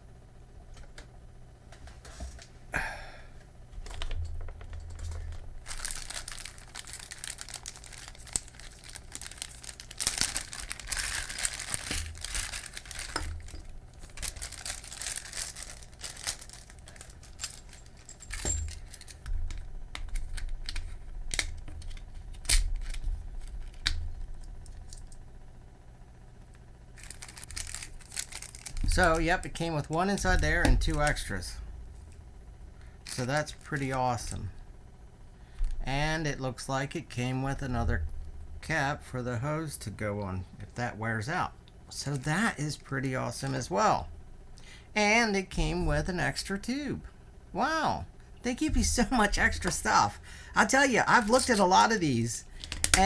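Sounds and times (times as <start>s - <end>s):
packaging crinkling: 5.2s - 25.2s, 27.0s - 31.3s, 48.6s - 53.0s.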